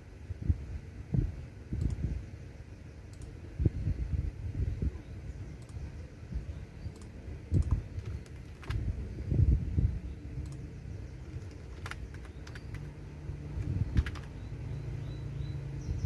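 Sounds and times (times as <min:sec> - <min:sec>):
keyboard key clicks: 0:06.9 - 0:08.9, 0:11.2 - 0:12.9, 0:13.5 - 0:14.5.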